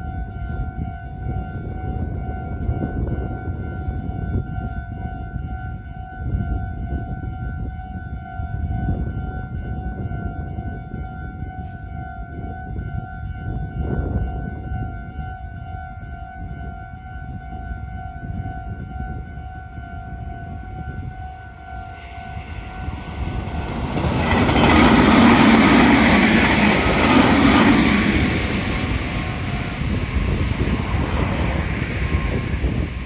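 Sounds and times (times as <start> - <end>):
railroad crossing bell ringing: 0.0 - 33.0
electric train passing: 18.3 - 33.0.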